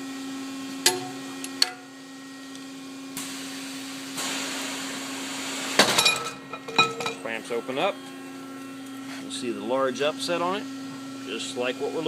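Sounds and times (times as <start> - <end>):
hiss: 3.2 - 5.8.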